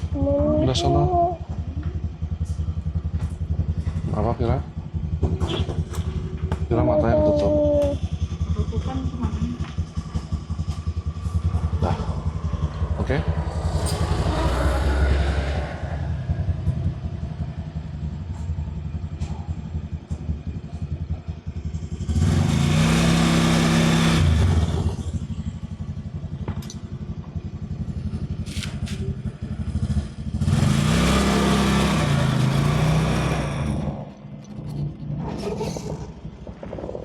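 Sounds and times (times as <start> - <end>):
vehicle engine accelerating: 0.0 - 37.0
wind noise rushing: 11.7 - 17.3.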